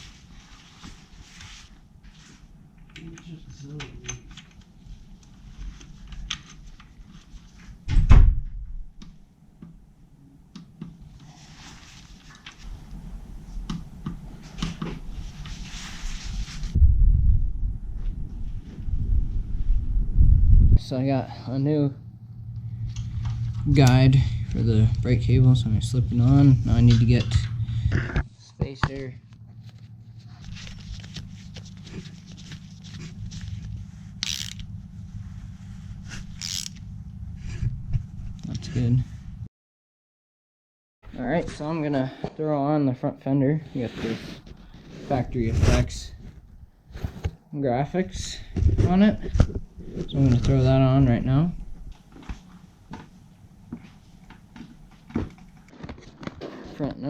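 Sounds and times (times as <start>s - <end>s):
steady low hum: 0.0s - 39.5s, 41.1s - 57.0s
clicks and scrapes of parts handled: 30.4s - 34.7s, 36.2s - 36.8s.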